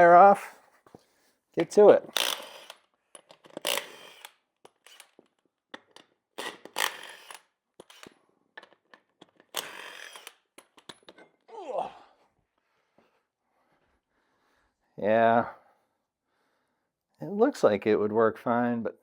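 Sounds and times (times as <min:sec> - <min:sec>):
impact wrench bursts: 0:02.1 - 0:02.8, 0:03.5 - 0:05.2, 0:06.4 - 0:08.1, 0:09.5 - 0:10.5.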